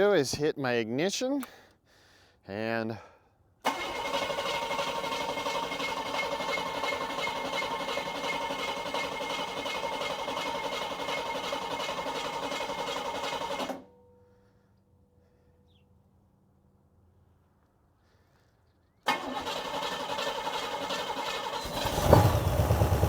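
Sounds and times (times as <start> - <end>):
engine cranking whir: 3.7 - 13.9, 19.1 - 23.0.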